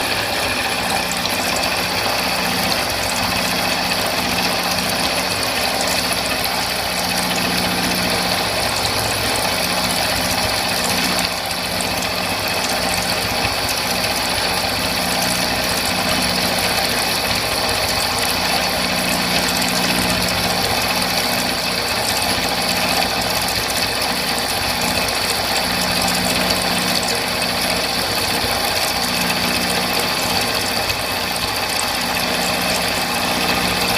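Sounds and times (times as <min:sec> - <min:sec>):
milling machine cutting steel: 0:00.0 - 0:33.9
spindle hum: 0:00.0 - 0:33.9.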